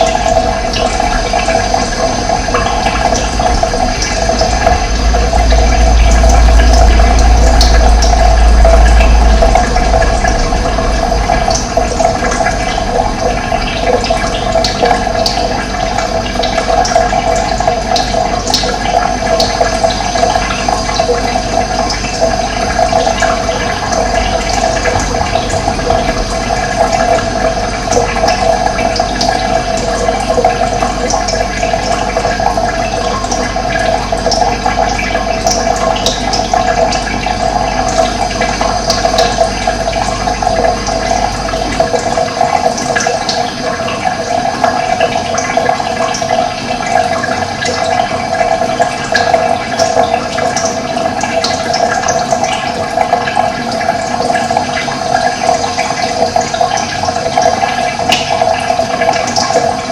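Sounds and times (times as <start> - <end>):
low hum: 0.0 - 47.1
running water rushing: 0.0 - 59.9.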